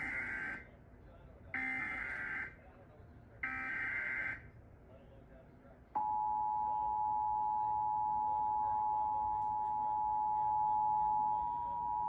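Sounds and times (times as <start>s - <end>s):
two-tone attention alarm: 1.6s - 2.5s, 3.4s - 4.4s, 6.0s - 12.0s.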